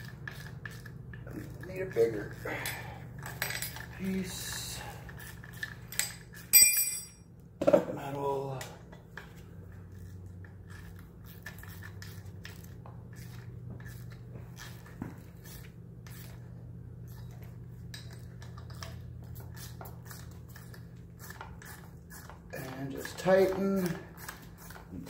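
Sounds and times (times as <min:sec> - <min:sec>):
steady low hum: 0:00.0 - 0:25.0
metal tools clinking against metal: 0:01.9 - 0:04.7, 0:05.5 - 0:07.2.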